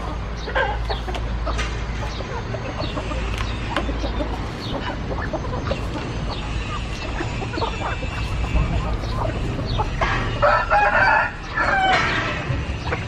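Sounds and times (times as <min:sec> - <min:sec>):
chickens clucking: 0:00.0 - 0:13.0
rooster crowing: 0:08.2 - 0:12.4.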